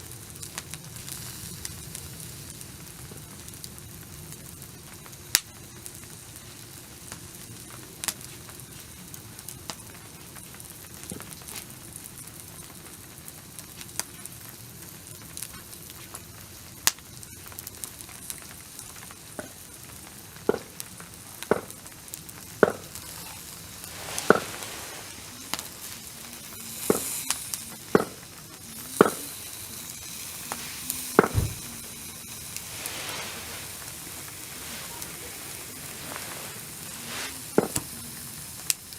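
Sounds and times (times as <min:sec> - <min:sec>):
food sizzling on a grill: 0:00.0 - 0:38.9
hissing flare-ups: 0:00.0 - 0:38.9
sharp pops: 0:20.4 - 0:38.8.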